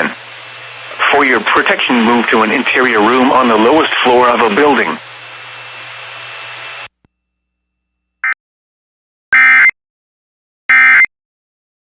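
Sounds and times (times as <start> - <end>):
buzzy digital data bursts: 0.0 - 6.9.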